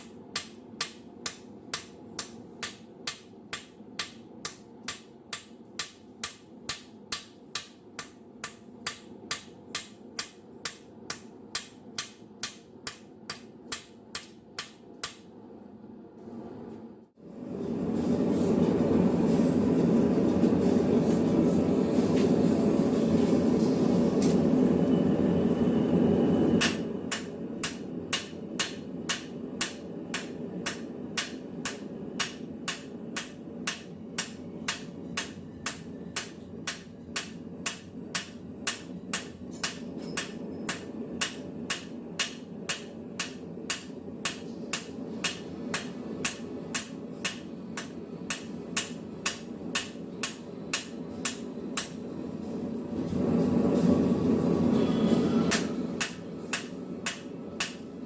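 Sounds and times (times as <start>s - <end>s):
hammer striking steel on anvil: 0.0s - 15.3s, 26.6s - 52.1s, 55.5s - 58.0s.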